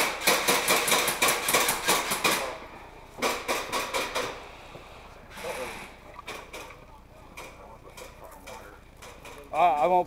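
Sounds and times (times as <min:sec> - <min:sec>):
airsoft gun firing rapidly: 0:00.0 - 0:02.6.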